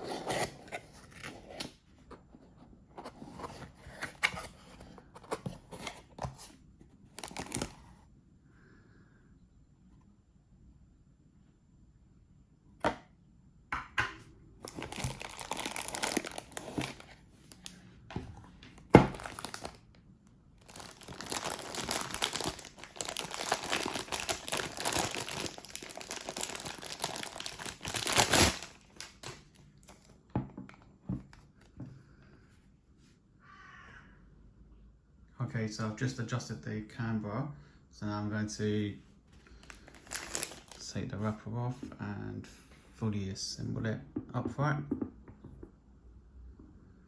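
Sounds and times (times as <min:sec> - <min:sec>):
packaging crinkling and rustling: 0:07.1 - 0:07.9, 0:14.6 - 0:19.9, 0:20.6 - 0:30.2, 0:39.4 - 0:41.0.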